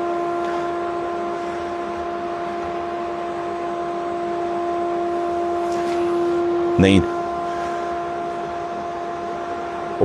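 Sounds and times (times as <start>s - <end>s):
machine humming and whining: 0.0s - 10.0s.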